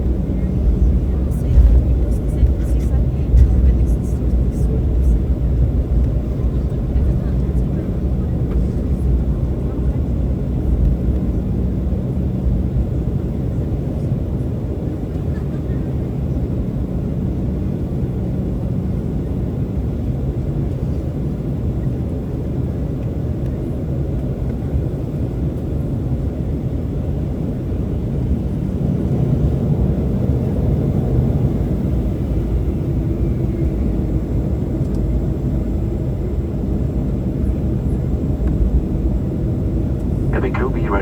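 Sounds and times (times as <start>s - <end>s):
jet engines idling: 39.3s - 41.0s
cabin air noise: 40.3s - 41.0s.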